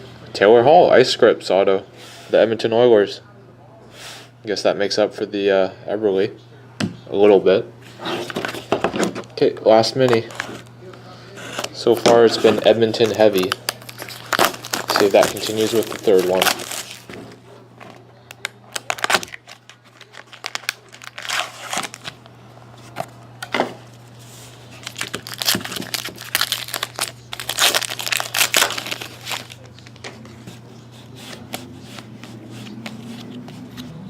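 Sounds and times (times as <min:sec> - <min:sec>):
cards rustling: 0:11.3 - 0:23.2, 0:24.6 - 0:34.0
wrappers crinkling and tearing: 0:11.5 - 0:22.3, 0:24.7 - 0:30.0.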